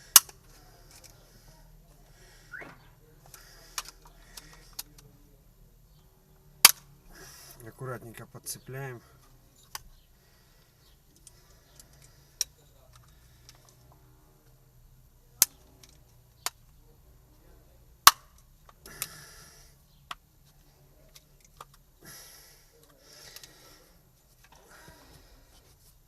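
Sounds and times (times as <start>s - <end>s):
plastic clicks and snaps: 18.0s - 19.1s.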